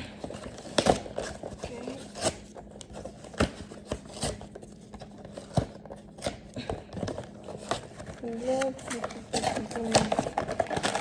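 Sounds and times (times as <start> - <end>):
packaging clicks and snaps: 8.5 - 11.0.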